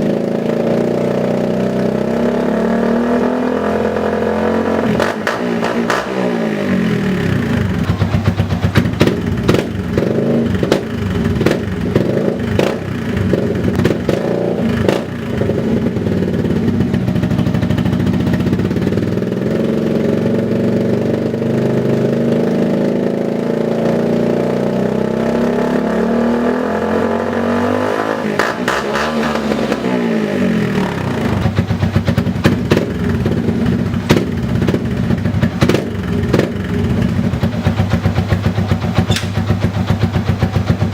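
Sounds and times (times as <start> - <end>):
motorcycle engine revving: 0.0 - 40.9
exhaust pops and crackles: 7.8 - 14.2, 34.0 - 37.0.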